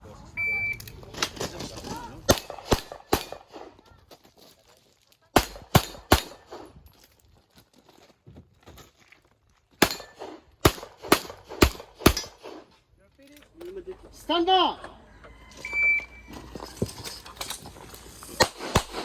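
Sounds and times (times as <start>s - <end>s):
pistol shots: 2.3s - 3.8s, 5.4s - 6.8s, 9.8s - 12.7s, 18.4s - 19.0s.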